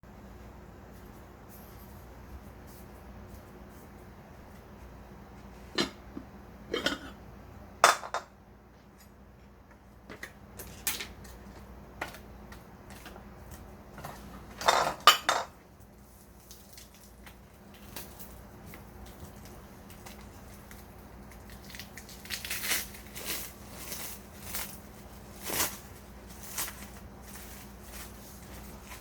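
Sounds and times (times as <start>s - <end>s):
faint steady hum: 0.0s - 29.0s
dishes and pots clattering: 5.7s - 7.2s, 7.8s - 8.3s, 14.0s - 15.6s.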